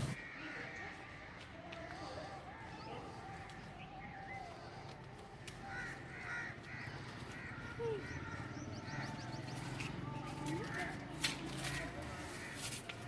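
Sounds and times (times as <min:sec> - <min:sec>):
birds calling: 0:00.0 - 0:13.0
crow-like caws: 0:00.1 - 0:02.2, 0:05.4 - 0:09.3, 0:11.9 - 0:12.8.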